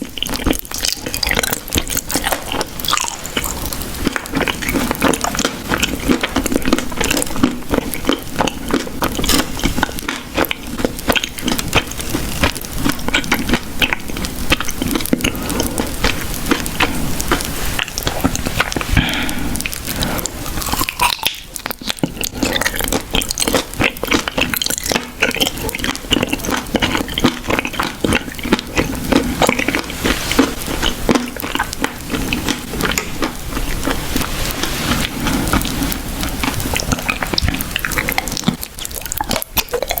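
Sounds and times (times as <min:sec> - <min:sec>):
small clicks and crackles: 0:00.0 - 0:40.0
wet chewing and biting: 0:00.0 - 0:40.0.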